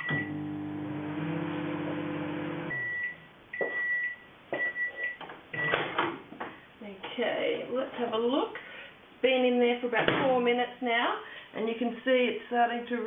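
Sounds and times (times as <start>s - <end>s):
microwave oven humming: 0.0s - 3.2s
microwave high-pitched beeps: 0.0s - 5.8s.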